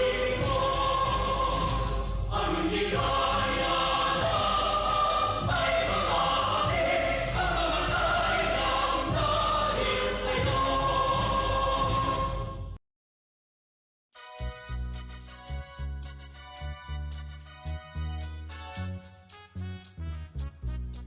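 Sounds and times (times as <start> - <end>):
choir singing: 0.0 - 12.7
instrumental accompaniment: 14.2 - 21.0.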